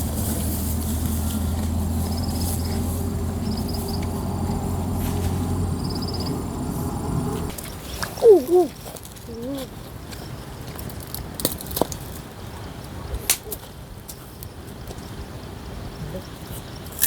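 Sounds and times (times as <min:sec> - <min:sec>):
low engine hum: 0:00.0 - 0:07.6
insect trills: 0:01.4 - 0:07.6.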